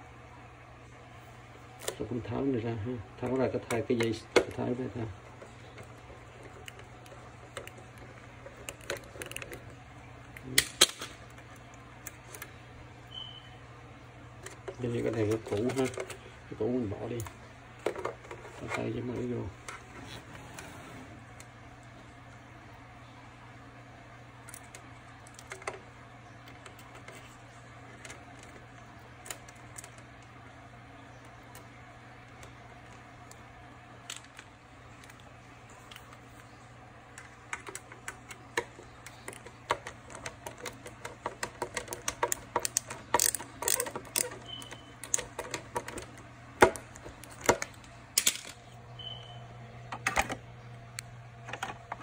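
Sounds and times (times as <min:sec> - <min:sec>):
steady low hum: 0:00.0 - 0:52.0
plastic parts clicking and tapping: 0:03.2 - 0:09.7, 0:14.4 - 0:16.2, 0:17.1 - 0:19.8, 0:24.5 - 0:25.8, 0:34.0 - 0:35.3, 0:37.1 - 0:48.6, 0:51.4 - 0:52.0.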